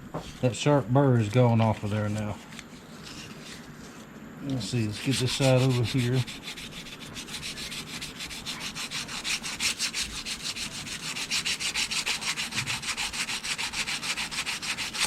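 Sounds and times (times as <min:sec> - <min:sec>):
sandpaper scratching on metal: 0:04.6 - 0:15.0.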